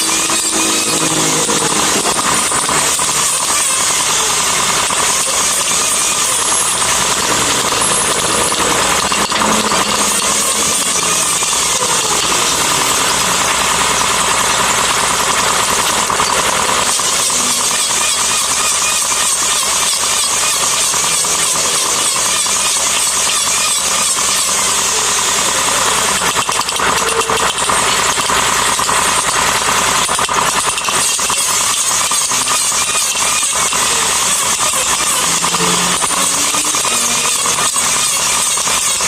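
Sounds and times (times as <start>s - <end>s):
power tool running on wood: 0.0s - 39.0s.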